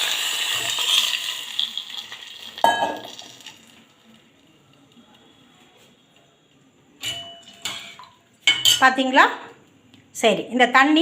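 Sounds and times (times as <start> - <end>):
water pouring: 0.0 - 4.5
oil sizzling loudly: 0.0 - 4.9.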